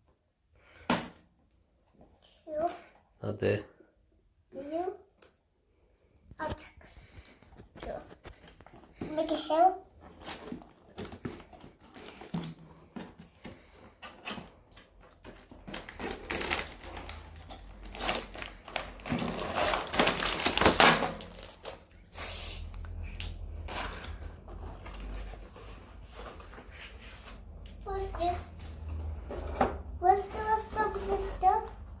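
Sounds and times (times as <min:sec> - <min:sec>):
toy packaging rustling and crinkling: 0:06.4 - 0:22.2, 0:30.0 - 0:31.8.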